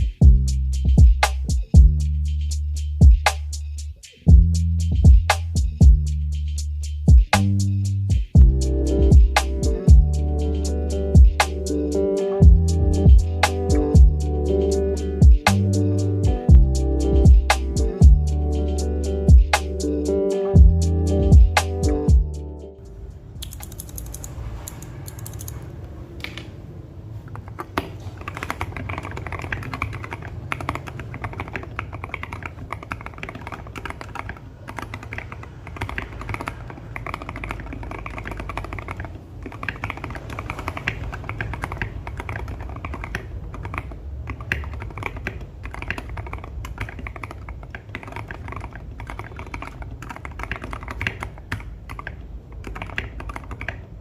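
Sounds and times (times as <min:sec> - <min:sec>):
mechanical keyboard typing: 0:22.9 - 0:25.7, 0:27.3 - 0:54.0.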